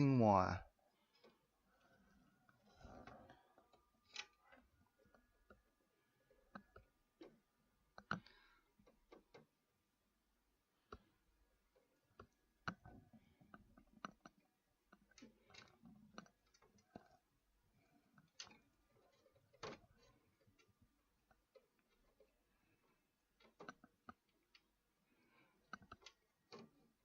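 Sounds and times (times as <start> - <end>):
small clicks: 18.1 - 27.0.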